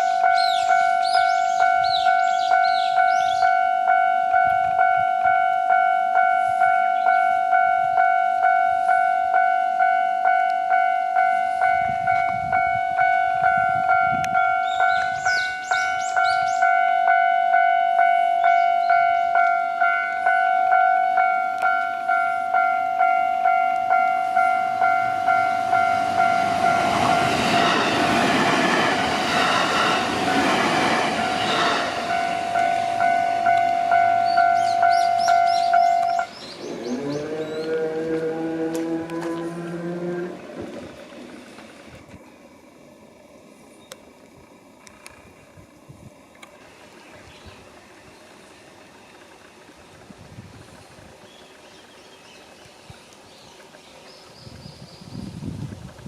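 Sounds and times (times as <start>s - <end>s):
level-crossing warning bell: 0.0s - 40.1s
train rumble and wheel clatter: 0.0s - 43.2s, 43.8s - 56.0s.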